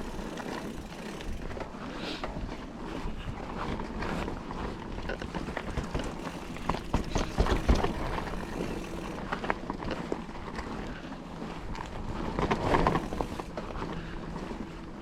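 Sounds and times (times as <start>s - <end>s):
tyres on dirt and gravel: 0.0s - 2.9s, 3.5s - 14.7s
bike knocking and clattering: 0.0s - 10.9s, 11.7s - 14.5s.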